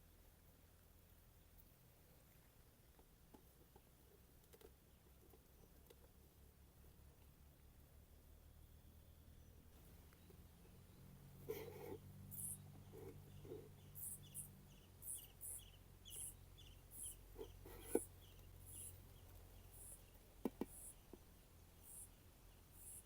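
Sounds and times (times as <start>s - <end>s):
low steady hum: 0.0s - 23.0s
small animal high chirps: 11.5s - 12.6s, 13.4s - 19.0s, 22.8s - 23.0s.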